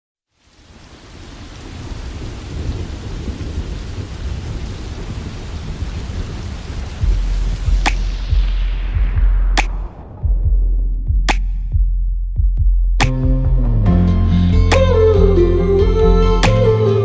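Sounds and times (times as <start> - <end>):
rain falling: 0.3 - 10.2
low rolling thunder: 0.6 - 11.2
deep bass note: 7.0 - 17.0
sharp crack: 7.2 - 10.4, 11.0 - 11.8.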